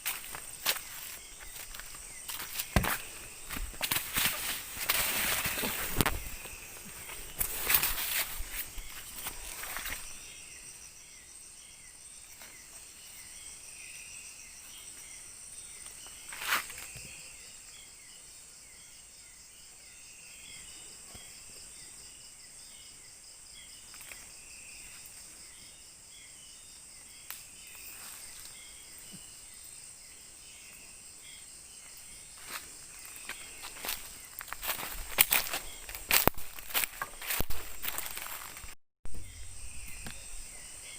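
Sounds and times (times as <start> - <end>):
insects chirring: 0.0 - 40.9
short insect chirps: 26.1 - 40.9.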